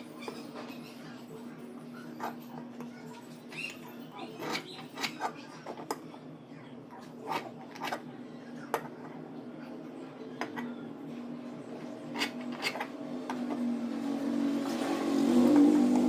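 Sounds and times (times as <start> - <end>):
machine hum: 10.8 - 16.0
metal clicks and scrapes: 12.1 - 13.6.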